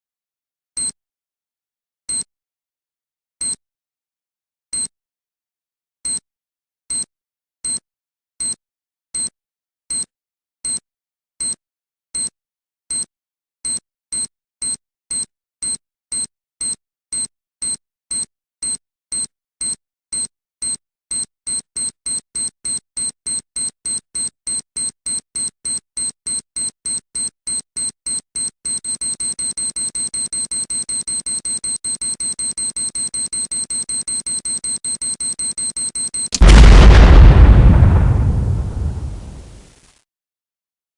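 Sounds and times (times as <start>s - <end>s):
loud explosion: 36.4s - 39.7s.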